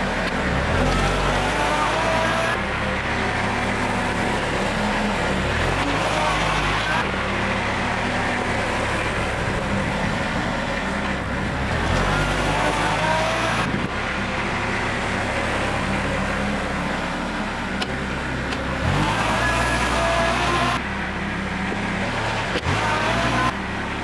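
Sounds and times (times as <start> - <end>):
tractor engine running under load: 0.0 - 24.0.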